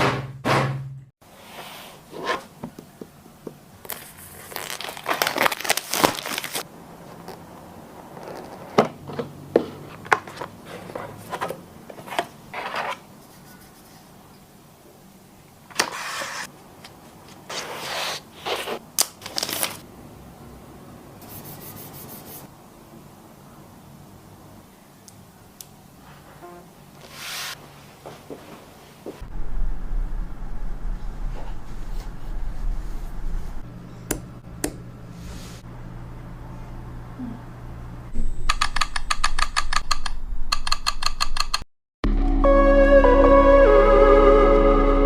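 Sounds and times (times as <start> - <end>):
plastic and cardboard crinkling: 3.8 - 13.0.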